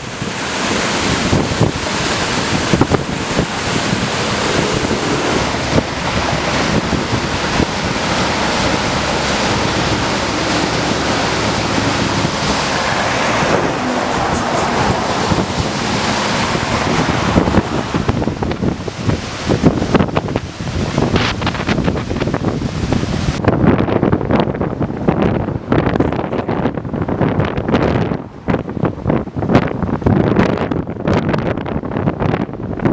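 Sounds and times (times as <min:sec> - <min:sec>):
floodwater rushing: 0:00.0 - 0:23.6
wind buffeting microphone: 0:00.0 - 0:32.9.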